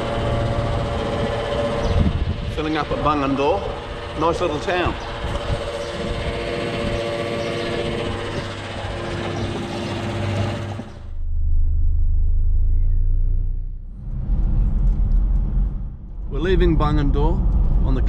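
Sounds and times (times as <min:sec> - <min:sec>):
mechanical hum with held tones: 0:00.0 - 0:18.0
car driving rumble from inside: 0:11.1 - 0:18.0.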